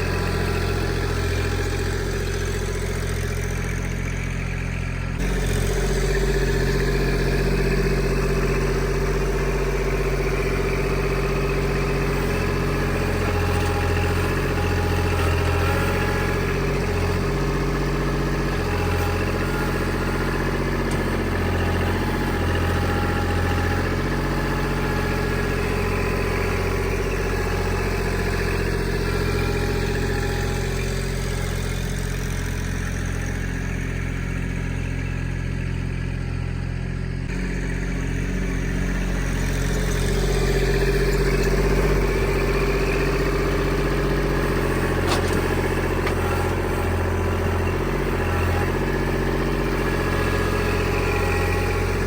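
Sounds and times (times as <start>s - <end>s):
engine running: 0.0s - 52.0s.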